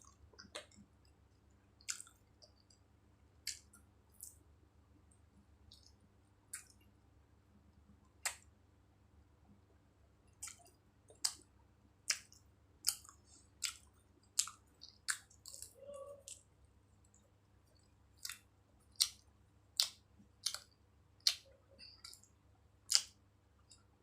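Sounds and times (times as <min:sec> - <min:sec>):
person chewing food: 0:00.0 - 0:04.4, 0:10.3 - 0:22.3, 0:22.9 - 0:23.9.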